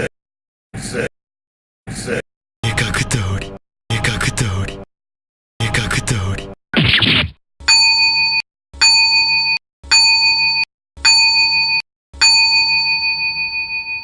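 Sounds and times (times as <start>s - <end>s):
bell-like ding: 11.4s - 14.0s.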